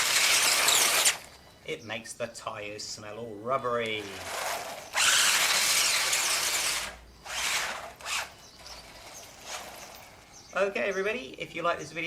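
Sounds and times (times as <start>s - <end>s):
toy car tyres skidding: 0.0s - 1.3s, 4.0s - 10.4s.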